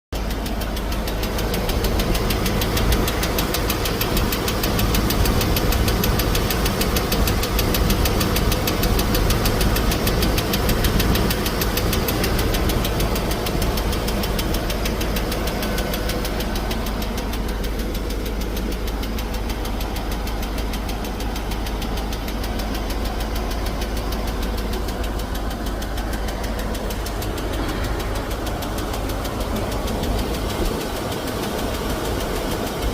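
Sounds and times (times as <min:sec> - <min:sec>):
engine running with lifter ticking: 0:00.1 - 0:32.9.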